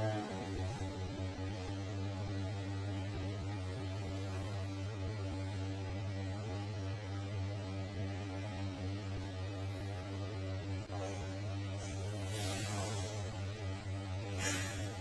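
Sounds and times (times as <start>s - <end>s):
faint wavering tones: 0.0s - 6.7s, 9.2s - 15.0s
low electrical hum: 0.0s - 15.0s.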